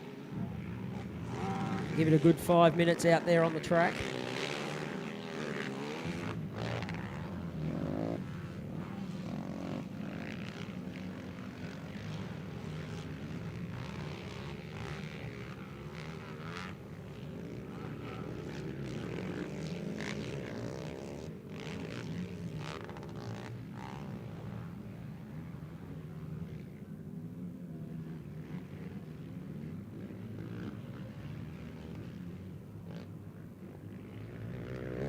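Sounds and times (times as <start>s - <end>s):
quad engines revving: 0.6s - 24.4s.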